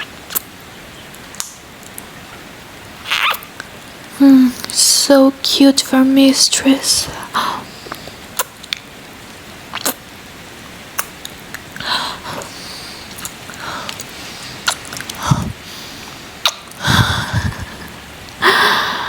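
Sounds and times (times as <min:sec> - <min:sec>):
rain hiss: 0:00.0 - 0:19.0
wet lip smacks and clicks: 0:00.3 - 0:00.5, 0:01.4 - 0:02.0, 0:07.9 - 0:08.9, 0:09.7 - 0:10.0, 0:11.0 - 0:11.9, 0:13.1 - 0:15.2, 0:16.4 - 0:16.8
breathy puffs: 0:11.8 - 0:19.0.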